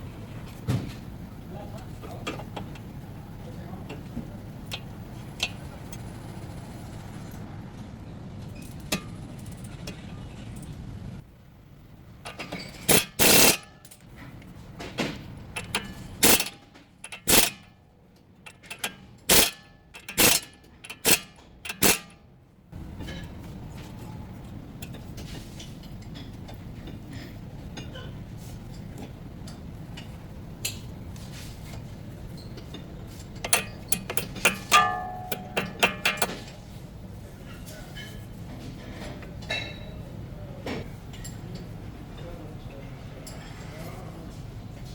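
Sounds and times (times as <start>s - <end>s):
sharp knocks and clicks: 32.6s - 36.6s.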